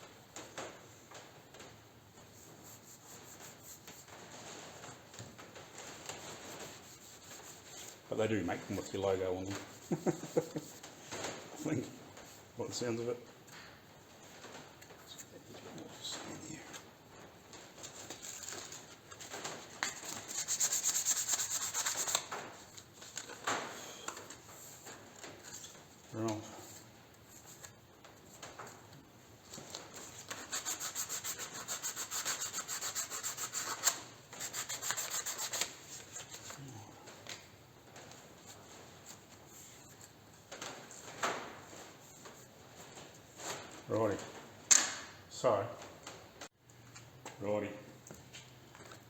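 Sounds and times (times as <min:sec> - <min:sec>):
hand sanding strokes: 0:02.4 - 0:04.3, 0:06.1 - 0:08.0, 0:09.5 - 0:11.0, 0:20.0 - 0:22.3, 0:30.2 - 0:36.2
hand rasping on workpiece: 0:30.4 - 0:35.6.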